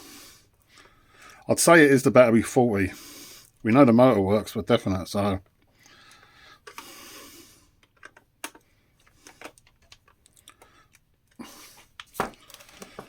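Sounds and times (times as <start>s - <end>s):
plastic parts being handled: 7.8s - 13.0s.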